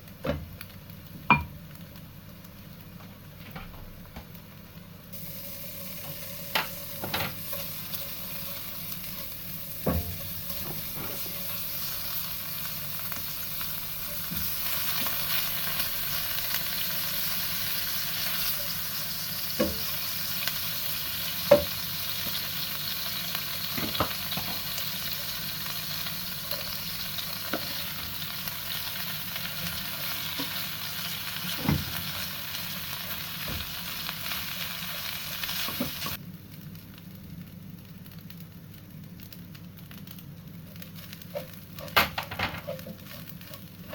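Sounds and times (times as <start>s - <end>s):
food sizzling in a pan: 0.0s - 43.9s.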